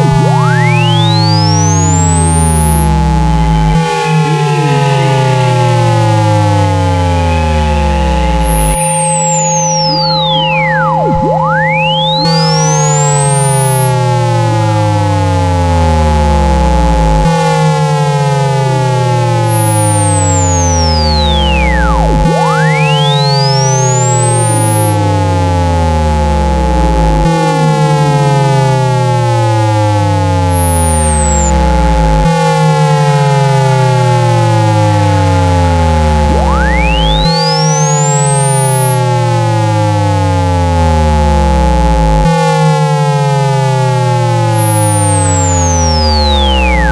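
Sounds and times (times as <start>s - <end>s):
falling sweeping tones: 0.0s - 16.2s, 17.5s - 26.9s
electronic low hum: 0.0s - 46.9s
high whistle gliding: 0.3s - 15.9s, 17.6s - 26.9s, 28.6s - 31.6s, 36.2s - 41.1s, 42.6s - 46.9s.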